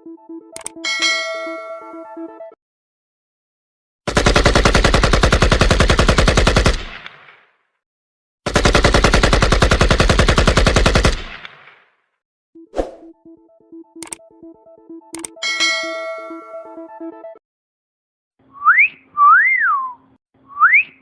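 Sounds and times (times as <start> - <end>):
rapid automatic gunfire: 4.1 - 7.3, 8.5 - 11.6.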